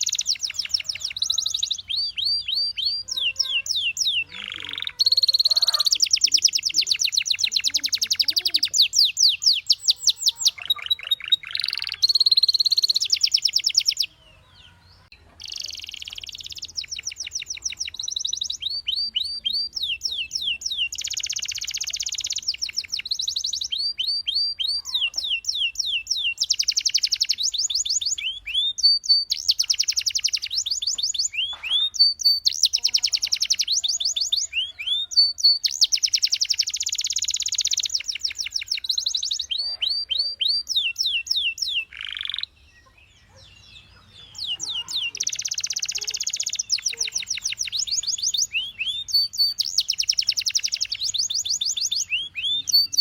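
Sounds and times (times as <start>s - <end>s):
canary singing: 0.0s - 53.0s.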